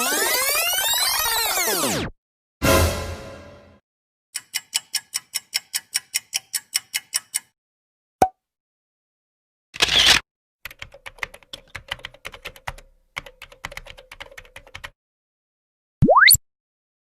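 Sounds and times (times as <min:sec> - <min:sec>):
computer keyboard typing: 0:10.6 - 0:15.0.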